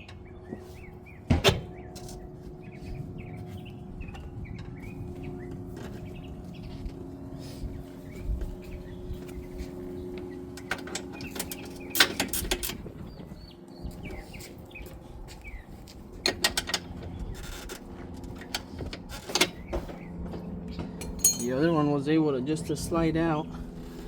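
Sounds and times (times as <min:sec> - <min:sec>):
steady low hum: 0:00.0 - 0:24.0
metal tools clinking: 0:21.0 - 0:21.8.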